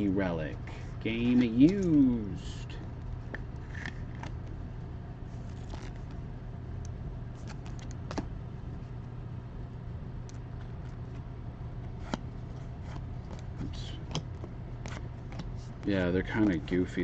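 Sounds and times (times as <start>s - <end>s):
low hum: 0.0s - 17.0s
cards and wrappers rustling: 5.4s - 6.2s.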